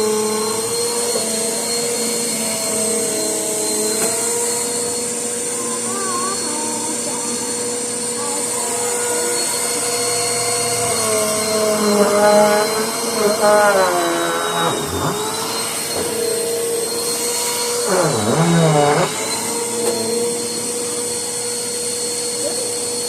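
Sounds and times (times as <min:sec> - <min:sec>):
vacuum cleaner running: 0:00.0 - 0:23.0.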